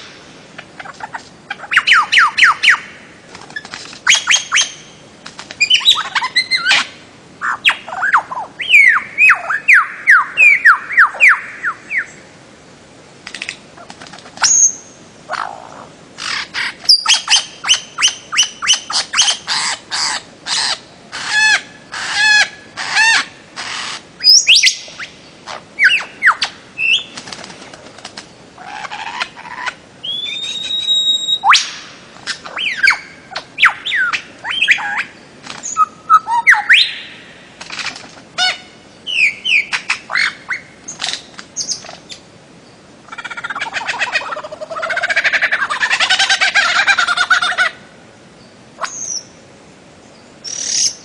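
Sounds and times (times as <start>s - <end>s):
bird calling with whistled notes: 0.8s - 3.0s, 3.6s - 5.0s, 5.6s - 12.3s, 14.4s - 15.6s, 16.2s - 27.2s, 28.6s - 37.3s, 38.4s - 41.0s, 41.6s - 42.2s, 48.4s - 49.4s, 50.0s - 51.0s.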